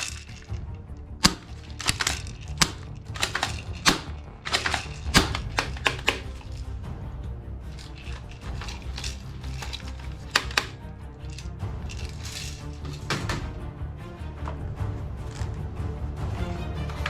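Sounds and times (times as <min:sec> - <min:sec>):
toy guns clicking: 0:00.0 - 0:00.6, 0:01.2 - 0:06.7, 0:07.8 - 0:13.4
quiet background music: 0:00.0 - 0:17.0.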